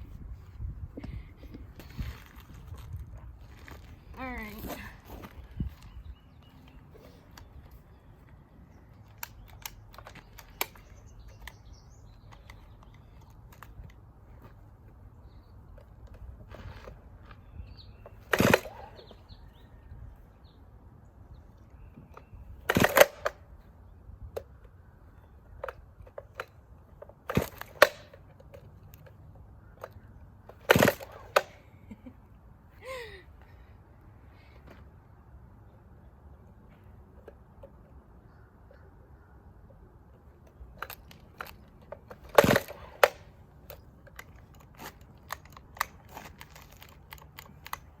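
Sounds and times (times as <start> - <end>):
chainsaw starter cord pulls: 22.7 - 23.3, 40.8 - 48.0.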